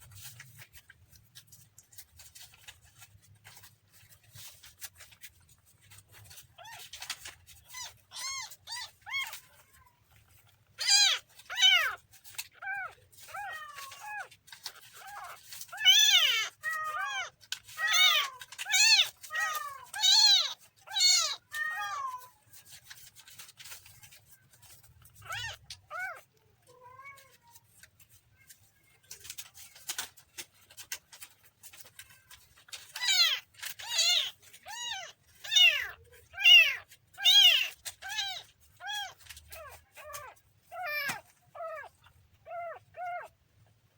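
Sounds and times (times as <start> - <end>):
kitten mewing: 33.0 - 43.4.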